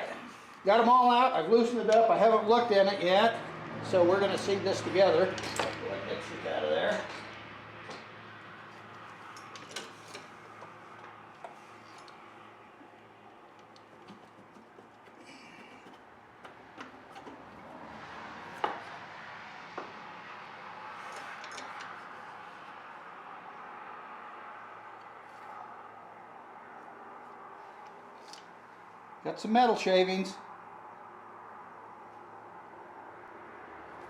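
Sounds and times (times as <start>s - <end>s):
metallic clicks of engine parts: 8.7s - 12.2s, 21.1s - 22.1s.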